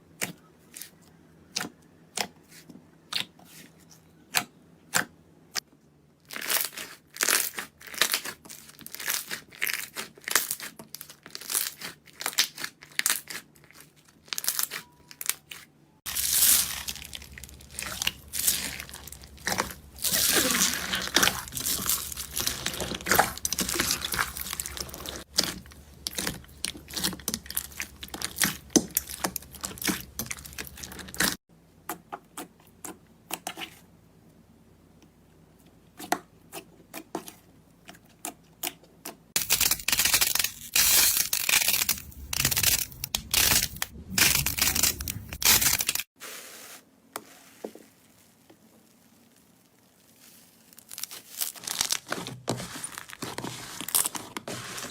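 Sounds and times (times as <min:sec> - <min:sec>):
slime crackling and popping: 0:16.1 - 0:31.4, 0:39.4 - 0:46.1, 0:48.1 - 0:52.2.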